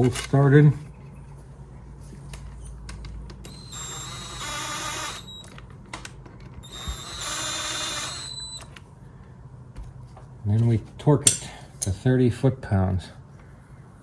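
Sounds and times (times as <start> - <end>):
cordless power tool whining: 3.4 - 8.8.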